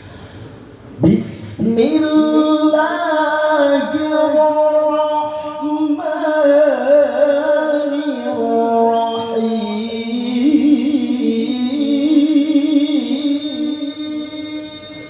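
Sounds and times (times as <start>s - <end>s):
person chanting a melismatic note: 8.6s - 15.0s.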